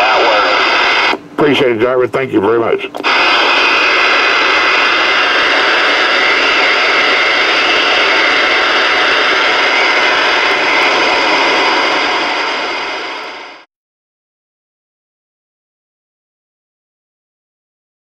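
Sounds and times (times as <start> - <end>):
radio static hiss: 0.0 - 13.7.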